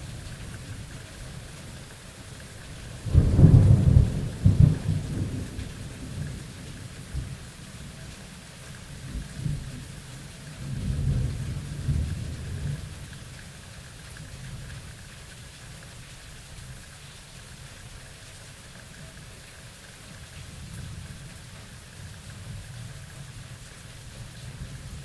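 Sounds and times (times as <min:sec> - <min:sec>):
steady rain: 0:00.0 - 0:25.0
thunder rumbling: 0:03.0 - 0:06.5.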